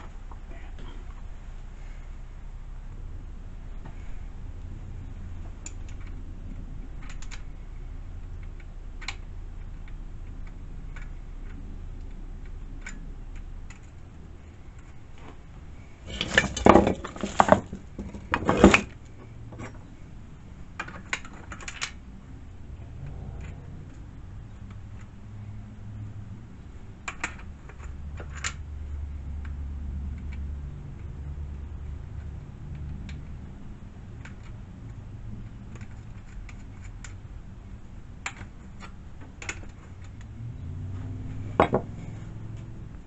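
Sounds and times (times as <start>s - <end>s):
metallic clattering: 16.0s - 18.9s.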